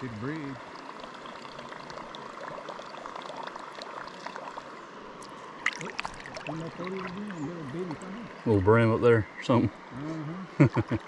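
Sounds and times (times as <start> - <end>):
water splash: 1.7 - 8.2.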